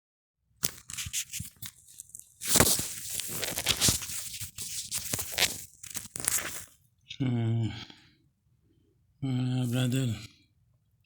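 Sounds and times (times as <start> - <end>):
clicks and scraping handling: 0.6 - 6.8.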